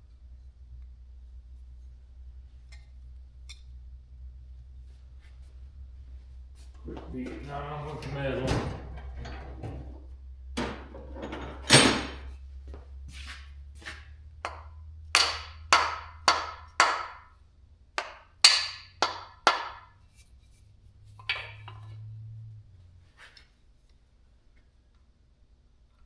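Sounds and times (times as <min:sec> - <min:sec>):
hammer knocking on metal parts: 0:07.0 - 0:12.3, 0:14.4 - 0:17.3, 0:18.0 - 0:19.9.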